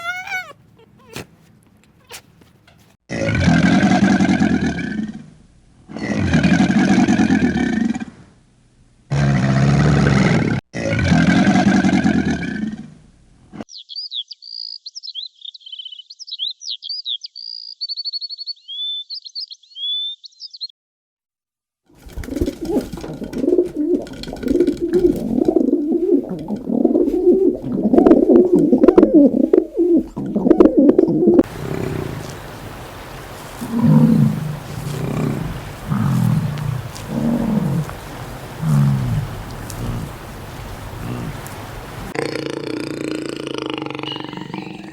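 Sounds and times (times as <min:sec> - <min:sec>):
animal low calls: 0:00.0 - 0:01.4, 0:22.3 - 0:44.9
songbird singing: 0:13.7 - 0:20.7, 0:31.4 - 0:42.2, 0:43.8 - 0:44.9.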